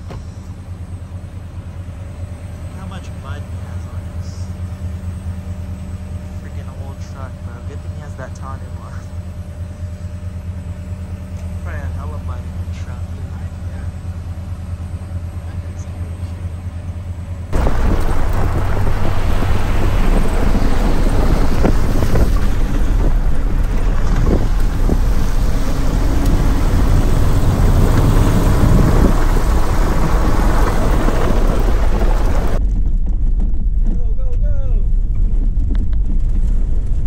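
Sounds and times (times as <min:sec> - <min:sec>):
truck road noise rumble: 0:00.0 - 0:37.0
wind buffeting microphone: 0:17.5 - 0:37.0.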